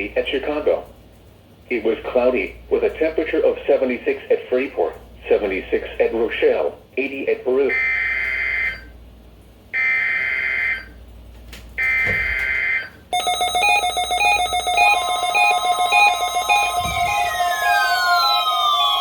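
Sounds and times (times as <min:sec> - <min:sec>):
alternating electronic alarm beeps: 0:07.7 - 0:08.9, 0:09.8 - 0:11.0, 0:11.8 - 0:19.0
steady alarm tone: 0:07.7 - 0:08.9, 0:09.8 - 0:11.0, 0:11.8 - 0:19.0
falling siren-like sweeps: 0:14.2 - 0:19.0.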